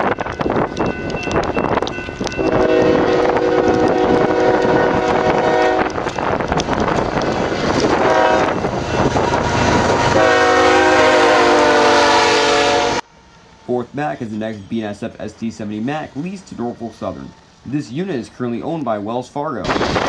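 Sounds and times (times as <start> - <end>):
train rumble: 0.0 - 19.0, 19.6 - 20.0
locomotive air horn blasts: 2.4 - 6.2, 7.9 - 13.0.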